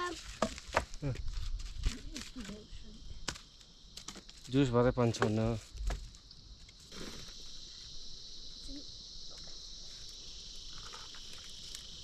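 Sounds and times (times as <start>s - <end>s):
insects droning: 0.0s - 12.0s.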